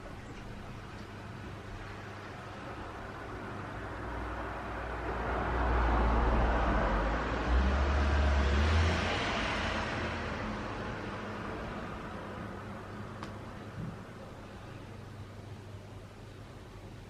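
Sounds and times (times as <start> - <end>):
vehicle passing by: 3.8 - 12.9.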